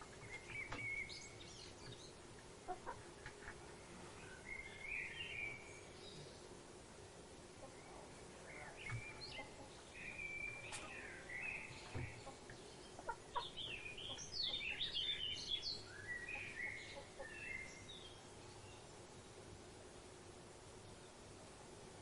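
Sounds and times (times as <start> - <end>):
faint background hum: 0.0 - 22.0
birds chirping and whistling: 0.2 - 2.1, 13.5 - 18.0.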